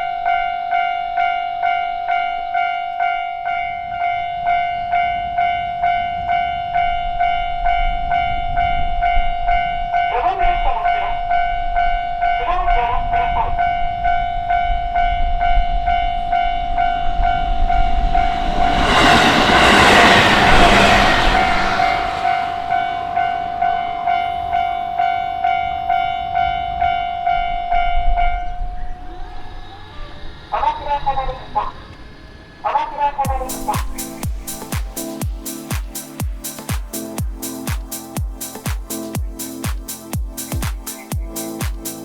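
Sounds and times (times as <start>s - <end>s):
level crossing warning bell: 0.0s - 19.9s, 22.2s - 29.9s
train rumble: 0.0s - 42.0s
train rushing past: 1.6s - 42.0s.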